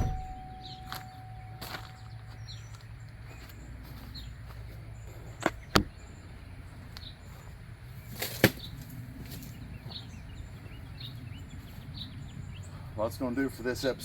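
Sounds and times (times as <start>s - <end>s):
sharp knocks: 0.0s - 1.8s.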